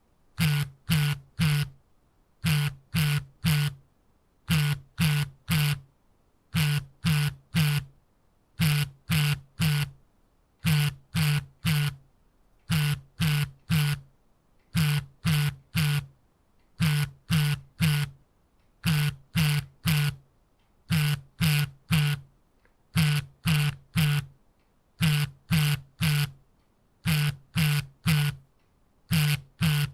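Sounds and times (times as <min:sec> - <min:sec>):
smartphone vibrating: 0:00.4 - 0:01.8, 0:02.4 - 0:03.8, 0:04.5 - 0:05.9, 0:06.5 - 0:07.9, 0:08.6 - 0:10.0, 0:10.6 - 0:12.0, 0:12.7 - 0:14.1, 0:14.7 - 0:16.1, 0:16.8 - 0:18.2, 0:18.8 - 0:20.2, 0:20.9 - 0:22.3, 0:23.0 - 0:24.4, 0:25.0 - 0:26.4, 0:27.0 - 0:28.4, 0:29.1 - 0:29.9.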